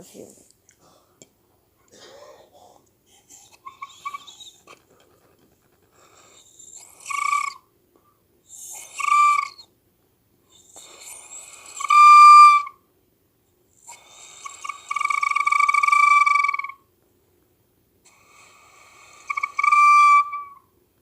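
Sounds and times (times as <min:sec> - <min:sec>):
flute whistly note with breath noise: 0:07.0 - 0:07.6, 0:08.5 - 0:09.6, 0:14.5 - 0:16.8, 0:18.9 - 0:20.6.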